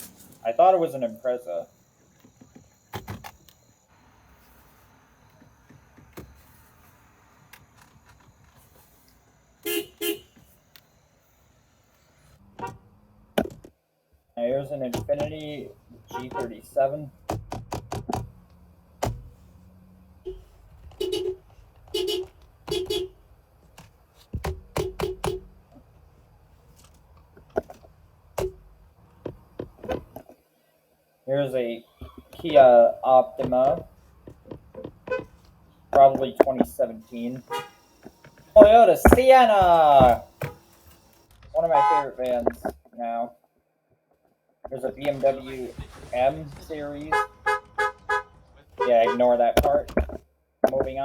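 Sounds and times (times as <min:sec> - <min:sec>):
low steady hiss: 0:00.0 - 0:17.2
car horn short beeps: 0:09.6 - 0:10.4, 0:37.4 - 0:37.9, 0:41.8 - 0:42.2, 0:47.1 - 0:49.2
car horn toots: 0:09.6 - 0:10.5, 0:16.1 - 0:16.6, 0:20.2 - 0:23.2, 0:24.8 - 0:25.5, 0:37.1 - 0:37.9, 0:38.5 - 0:40.7, 0:41.6 - 0:42.4, 0:47.0 - 0:49.4.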